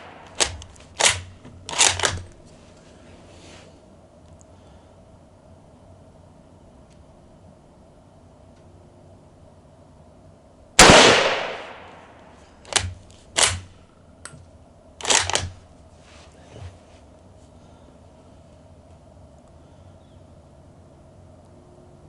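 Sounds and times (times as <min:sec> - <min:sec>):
rifle shot with echo: 0:00.0 - 0:01.2, 0:10.8 - 0:13.6.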